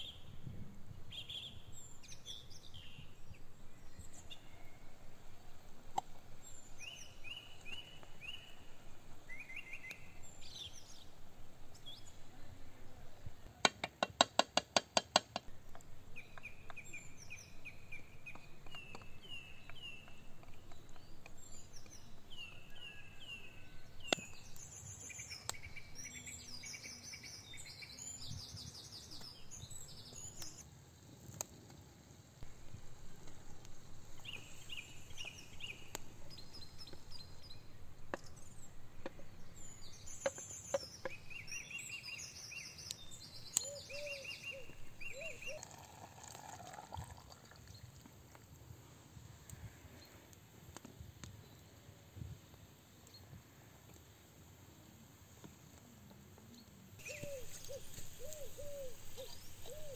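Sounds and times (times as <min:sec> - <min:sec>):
birds chirping and singing: 0:01.1 - 0:12.7, 0:16.0 - 0:30.6, 0:34.0 - 0:46.3, 0:57.0 - 0:59.9.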